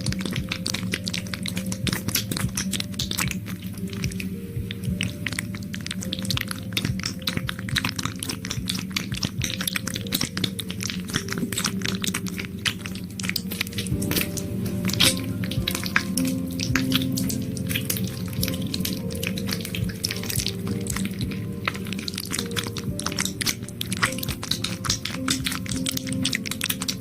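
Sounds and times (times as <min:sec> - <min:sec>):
soft background music: 0:00.0 - 0:27.0
wet sticky gel crackling: 0:00.0 - 0:27.0.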